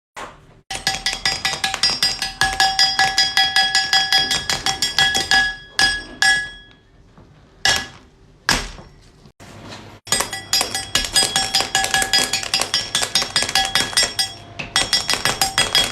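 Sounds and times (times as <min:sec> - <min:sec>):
knife chopping candy: 0:00.7 - 0:06.1, 0:10.1 - 0:15.9.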